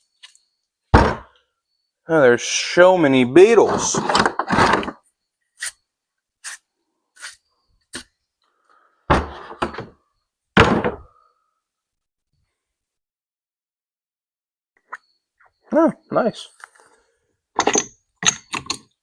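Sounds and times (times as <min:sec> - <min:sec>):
items knocking on workbench: 0:01.0 - 0:01.3, 0:09.1 - 0:09.9, 0:10.6 - 0:11.1.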